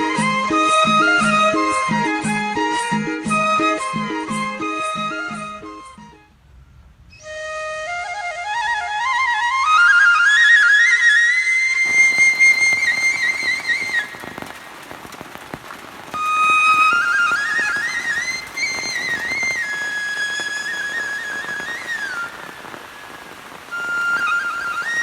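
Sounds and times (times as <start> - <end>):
rain pattering: 0.0 - 6.2, 11.7 - 25.0
slow flute melody: 0.0 - 6.3, 7.1 - 14.5, 16.0 - 25.0.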